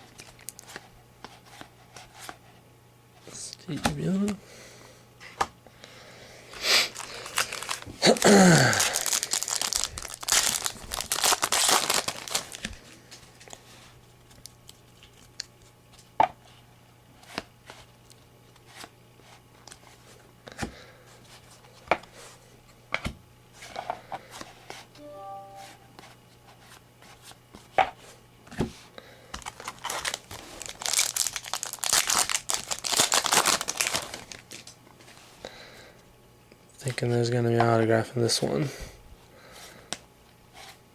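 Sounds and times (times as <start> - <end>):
wrapper tearing and crinkling: 6.9 - 12.9, 29.4 - 34.8.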